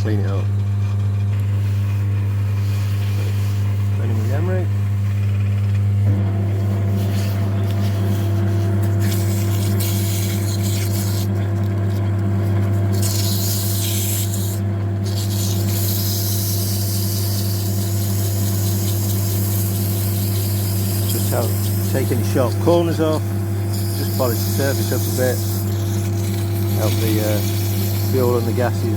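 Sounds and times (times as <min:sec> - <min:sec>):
lathe humming: 0:00.0 - 0:28.9
emery cloth rubbing metal: 0:06.5 - 0:11.4.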